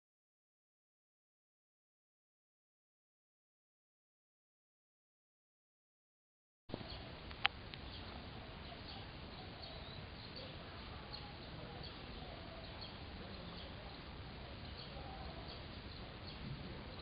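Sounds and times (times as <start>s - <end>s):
birds chirping: 6.7s - 17.0s
outdoor background noise: 6.7s - 17.0s.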